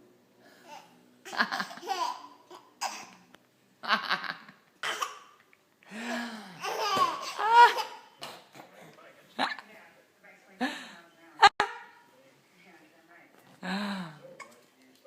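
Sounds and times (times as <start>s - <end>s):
baby laughing: 0.7s - 3.3s, 4.8s - 5.5s, 6.6s - 8.3s.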